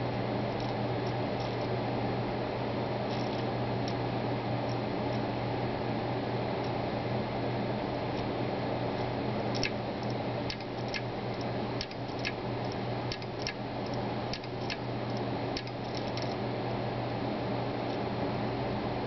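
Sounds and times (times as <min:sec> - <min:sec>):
hard drive humming: 0:00.0 - 0:19.0
hard drive heads clicking: 0:09.5 - 0:16.4.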